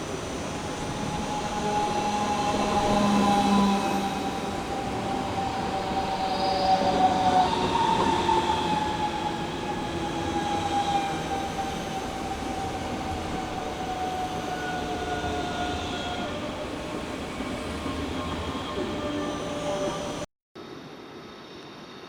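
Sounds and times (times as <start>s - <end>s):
electric train whine: 0.0s - 22.0s.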